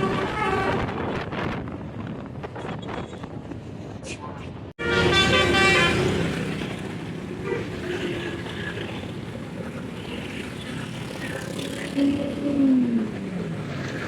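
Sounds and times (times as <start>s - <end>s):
wind on microphone: 0.0s - 4.7s
road traffic noise: 0.0s - 14.0s.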